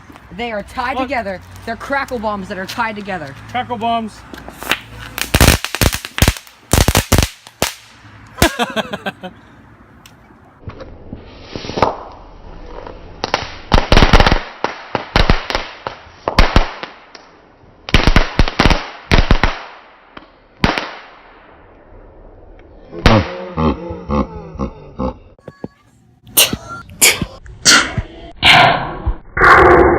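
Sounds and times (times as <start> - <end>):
crackling fireworks popping: 4.5 - 8.5, 11.4 - 17.3.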